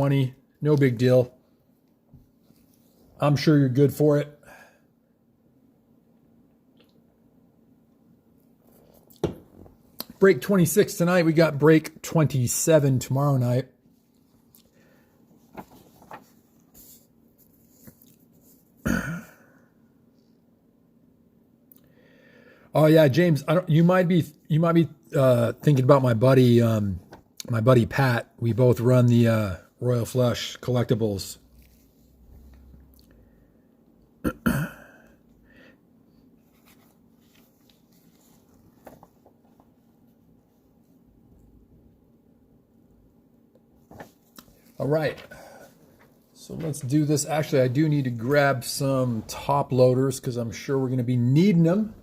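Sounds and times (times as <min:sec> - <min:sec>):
man clearing his throat: 0:18.8 - 0:19.6, 0:34.2 - 0:35.2
person coughing: 0:18.8 - 0:19.6, 0:34.2 - 0:35.2.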